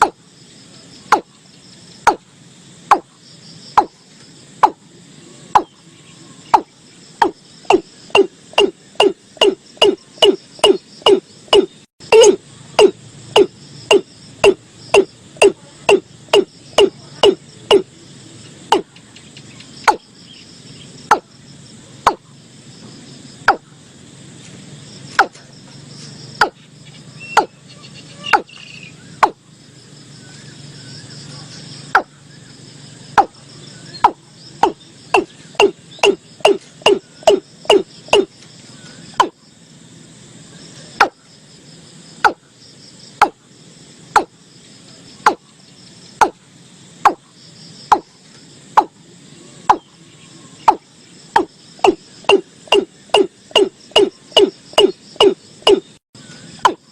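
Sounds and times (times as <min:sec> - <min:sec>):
insects chirring: 0:00.0 - 0:56.9
bird hollow knocking calls: 0:01.1 - 0:01.3, 0:02.1 - 0:02.3, 0:02.9 - 0:03.1, 0:03.8 - 0:04.0, 0:05.6 - 0:05.8, 0:06.5 - 0:17.9, 0:18.7 - 0:20.1, 0:21.1 - 0:21.3, 0:22.0 - 0:22.3, 0:25.2 - 0:25.5, 0:26.4 - 0:29.4, 0:32.0 - 0:32.2, 0:33.1 - 0:38.5, 0:39.1 - 0:39.4, 0:42.2 - 0:42.4, 0:43.2 - 0:43.4, 0:44.2 - 0:44.4, 0:45.2 - 0:45.4, 0:47.9 - 0:48.1, 0:49.7 - 0:50.0, 0:50.6 - 0:56.0.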